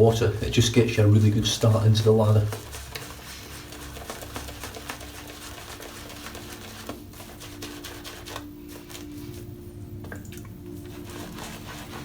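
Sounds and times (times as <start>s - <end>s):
shaving brush lathering soap: 0.0s - 12.0s.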